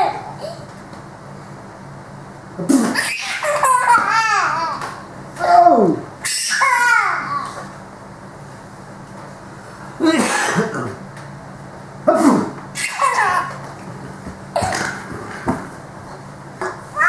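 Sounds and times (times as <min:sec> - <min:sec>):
child laughing: 0:02.9 - 0:05.0, 0:06.4 - 0:07.6, 0:12.8 - 0:13.7
man fake sneezing: 0:10.0 - 0:11.0, 0:12.1 - 0:12.6.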